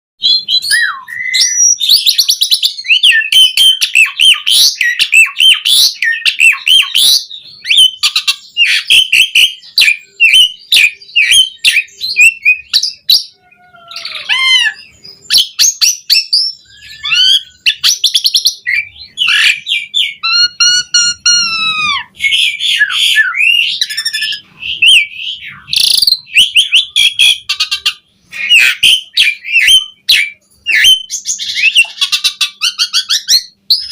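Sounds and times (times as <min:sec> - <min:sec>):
harsh ringing bird call: 0:00.2 - 0:33.9
starling singing varied song: 0:00.2 - 0:33.9.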